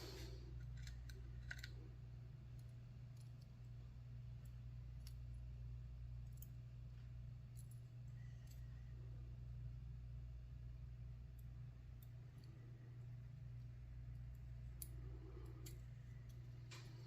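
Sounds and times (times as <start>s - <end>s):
steady low hum: 0.0s - 17.0s
small clicks of lock pins: 0.6s - 1.8s.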